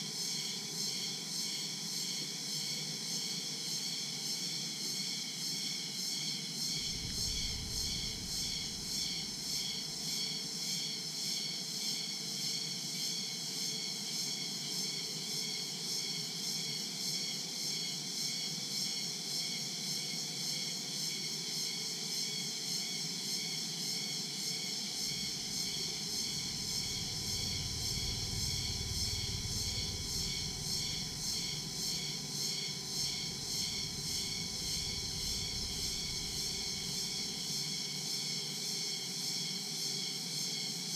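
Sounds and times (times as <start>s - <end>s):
crickets and insects trilling: 3.6s - 11.8s, 22.5s - 40.8s
faint low rumble: 6.8s - 9.6s, 25.0s - 32.2s, 32.8s - 37.0s.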